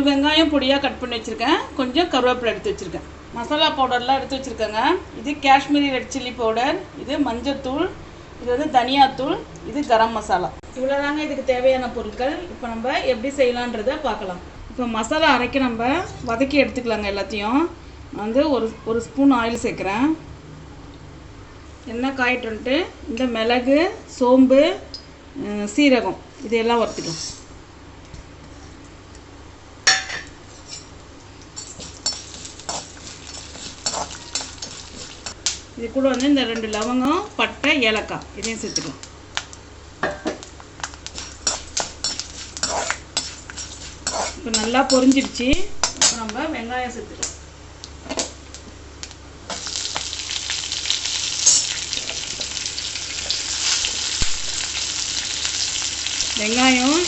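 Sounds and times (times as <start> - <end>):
spices ticking in hot oil: 31.4 - 36.8, 40.8 - 45.4, 49.0 - 57.0
metal spoon clinking on pan: 41.4 - 45.2, 51.4 - 51.8.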